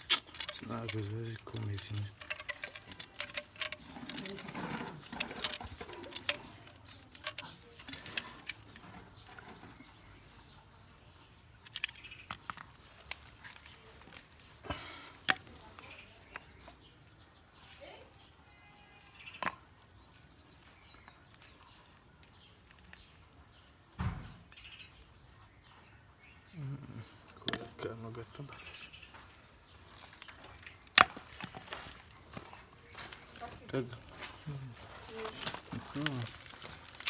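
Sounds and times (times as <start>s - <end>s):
small hard parts clicking: 0.0s - 10.2s, 11.6s - 16.7s, 35.2s - 37.0s.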